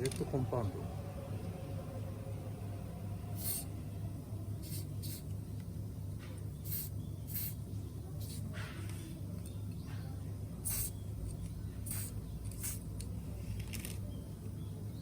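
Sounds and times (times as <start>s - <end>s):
steady low hum: 0.0s - 15.0s
aerosol spray hissing: 3.4s - 3.7s, 4.6s - 5.3s, 6.6s - 7.6s, 10.7s - 11.0s, 11.9s - 12.9s.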